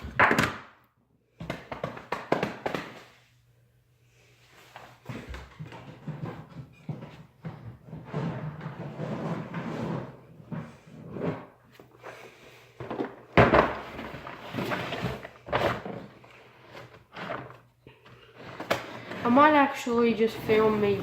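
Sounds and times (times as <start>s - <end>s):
tools scraping and bumping: 12.8s - 21.0s.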